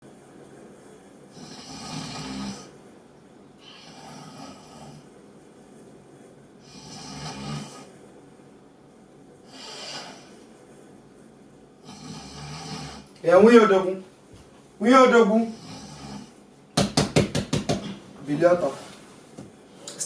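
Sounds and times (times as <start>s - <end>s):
woman snoring: 1.3s - 2.7s, 3.6s - 5.1s, 6.6s - 7.9s, 9.5s - 10.3s, 11.8s - 13.1s, 15.5s - 16.4s
breathy exhale: 9.5s - 10.5s.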